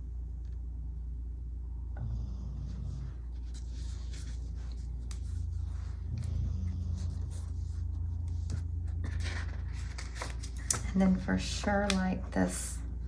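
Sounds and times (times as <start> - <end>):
paper rustling and scratching: 3.3 - 12.7.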